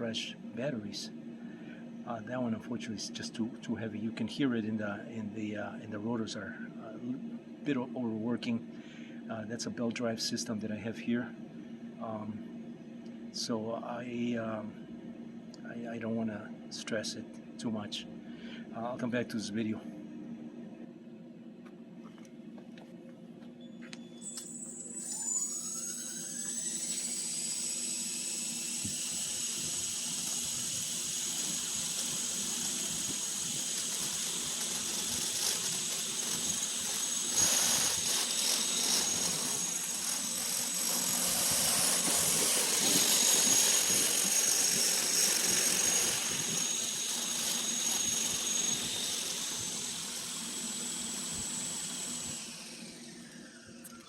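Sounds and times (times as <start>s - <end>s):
electric motors whining: 23.6s - 54.0s.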